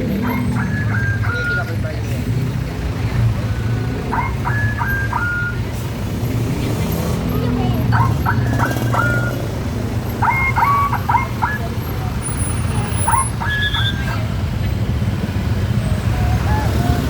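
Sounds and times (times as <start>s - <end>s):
low rumble of engines: 0.0s - 17.0s.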